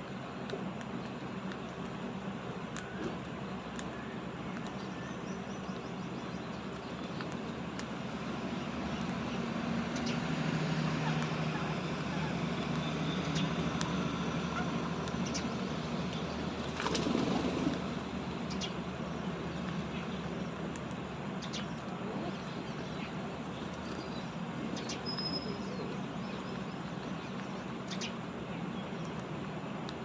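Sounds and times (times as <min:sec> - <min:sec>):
high bird chirp: 0:24.8 - 0:26.6.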